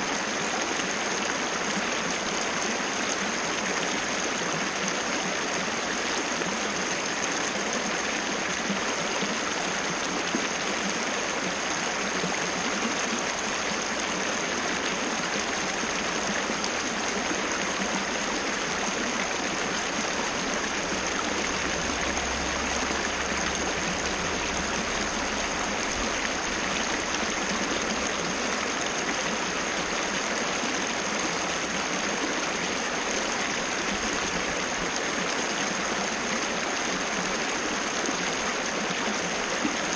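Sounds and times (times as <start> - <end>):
waterfall rushing: 9.8 - 32.0.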